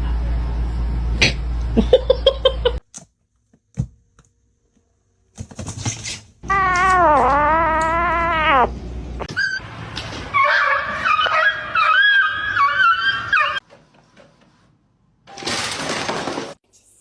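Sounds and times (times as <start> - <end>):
cat meowing: 6.4 - 8.8
warbling animal call: 6.4 - 9.3.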